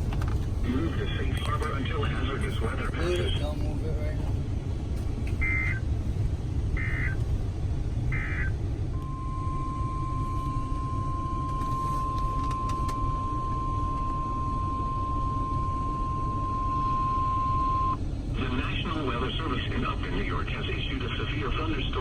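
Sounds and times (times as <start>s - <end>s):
radio static rumble and hiss: 0.0s - 7.4s, 18.3s - 22.0s
steady high alarm beep: 8.2s - 18.0s.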